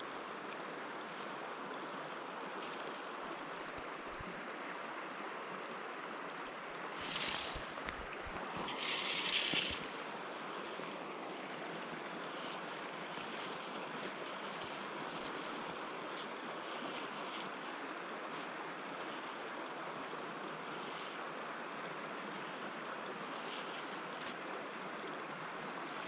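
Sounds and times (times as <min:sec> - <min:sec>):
river water rushing: 0:00.0 - 0:26.0
hissing swishes: 0:07.0 - 0:10.2.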